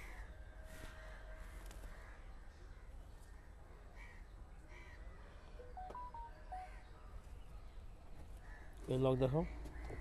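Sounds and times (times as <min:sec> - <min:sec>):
crows cawing: 0:04.0 - 0:05.0, 0:08.4 - 0:10.0
short electronic beeps: 0:05.6 - 0:06.8.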